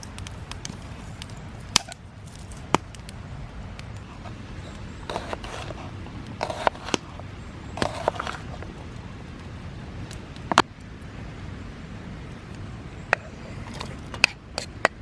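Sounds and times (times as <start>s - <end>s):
rustling or scraping: 5.0s - 8.8s.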